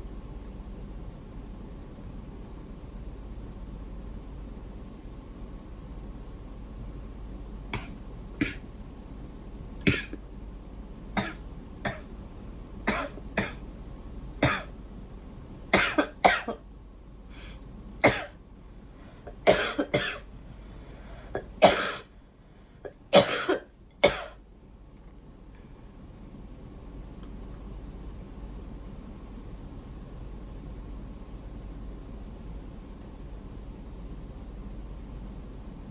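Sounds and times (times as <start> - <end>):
girl coughing: 7.8 - 8.6, 9.9 - 10.2, 11.2 - 12.1, 12.9 - 13.6, 14.4 - 14.7, 15.7 - 16.6, 18.0 - 18.4, 19.4 - 20.3, 21.4 - 22.1, 22.9 - 24.4.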